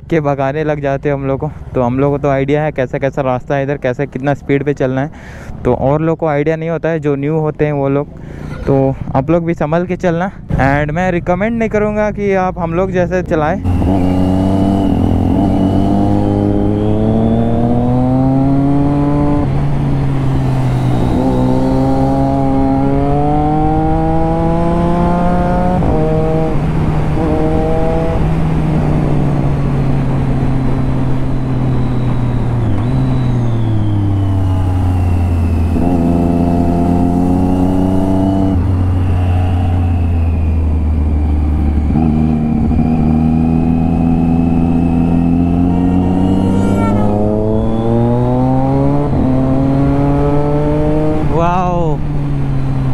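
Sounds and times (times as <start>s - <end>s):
motorcycle engine revving: 13.6s - 52.9s.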